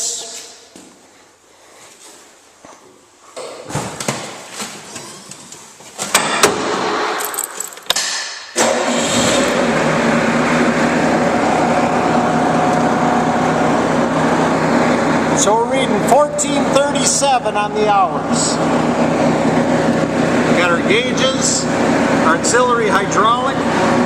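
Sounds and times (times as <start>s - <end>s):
diesel engine starting and running: 6.2s - 24.0s
keys jangling: 7.2s - 8.0s.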